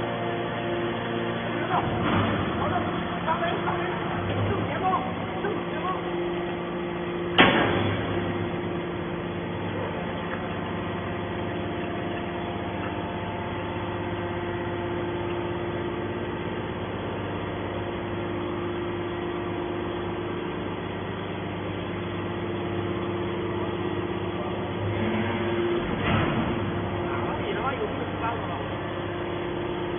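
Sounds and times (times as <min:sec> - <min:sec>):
hydraulic power unit humming: 0:00.0 - 0:29.9
sharp bang: 0:07.4 - 0:08.2.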